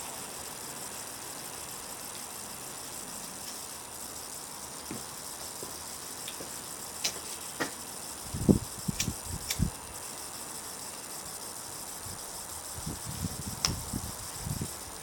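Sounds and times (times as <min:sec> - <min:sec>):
steady background hiss: 0:00.0 - 0:15.0
scattered clicks: 0:09.0 - 0:09.7.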